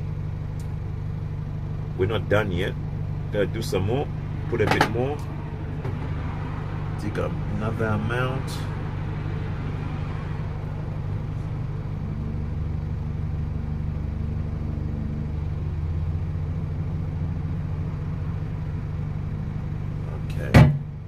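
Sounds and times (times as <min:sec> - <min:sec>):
vehicle engine idling: 0:00.0 - 0:21.0
sharp knock: 0:20.5 - 0:20.9.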